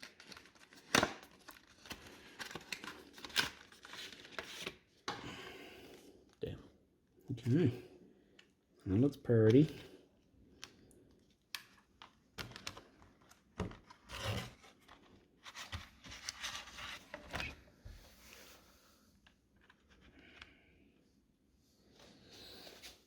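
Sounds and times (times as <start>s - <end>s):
plastic packaging crinkling: 0.0s - 4.8s.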